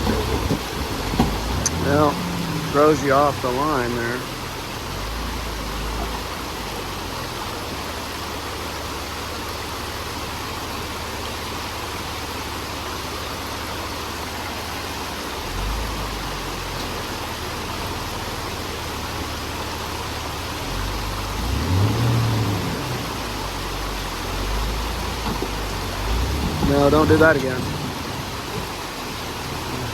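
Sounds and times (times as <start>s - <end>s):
vehicle engine running low: 0.0s - 29.9s.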